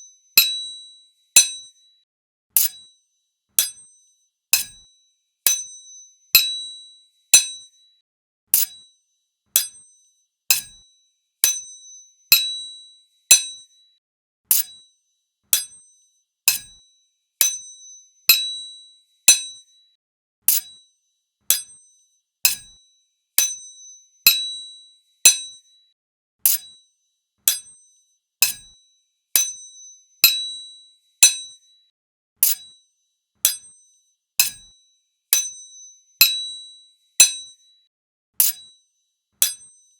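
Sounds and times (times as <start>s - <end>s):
sword blades clashing: 38.4s - 38.6s.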